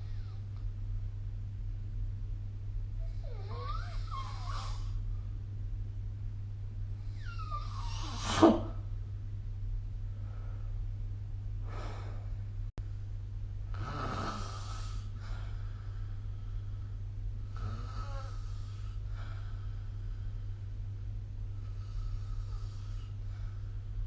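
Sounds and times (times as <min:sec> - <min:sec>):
steady low hum: 0:00.0 - 0:24.0
person snoring: 0:13.7 - 0:15.1, 0:17.5 - 0:19.0.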